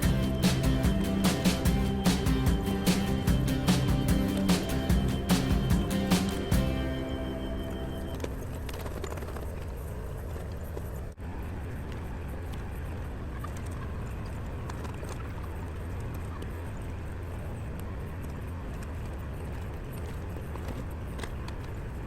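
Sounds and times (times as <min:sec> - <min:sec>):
tractor diesel engine running: 0:00.0 - 0:09.5.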